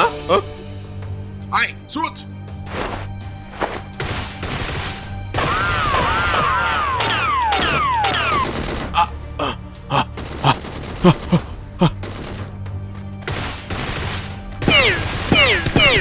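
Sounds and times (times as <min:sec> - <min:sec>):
background music: 0:00.0 - 0:16.0.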